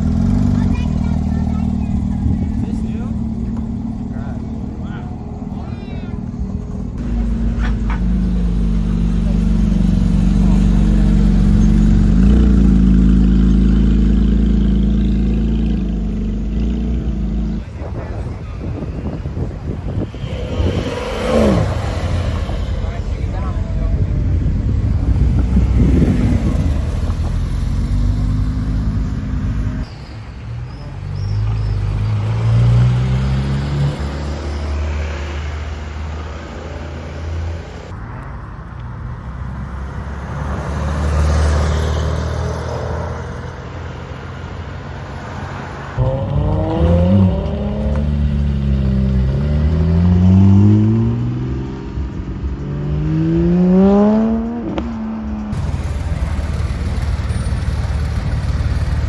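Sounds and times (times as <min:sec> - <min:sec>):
sports car engine accelerating: 0:00.0 - 0:29.9, 0:45.9 - 0:59.0.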